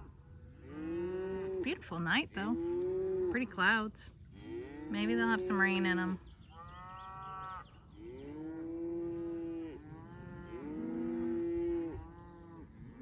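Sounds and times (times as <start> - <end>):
cows mooing: 4.3 - 13.0.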